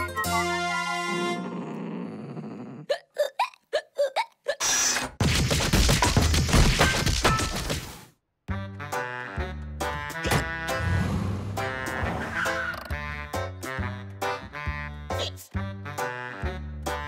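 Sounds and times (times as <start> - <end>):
cartoon hiccups: 2.8 - 5.0, 15.2 - 15.5.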